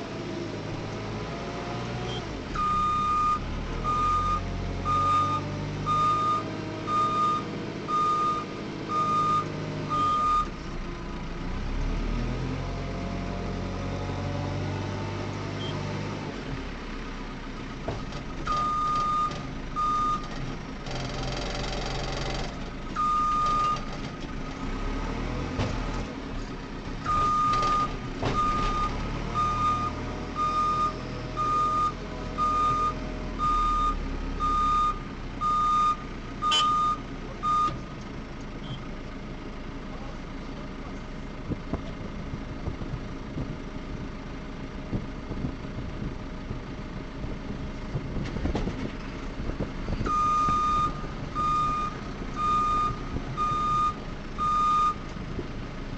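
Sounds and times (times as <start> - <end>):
diesel engine running: 0.0 - 55.9
reversing alarm beeping: 2.6 - 10.5, 27.1 - 37.8, 50.1 - 55.0.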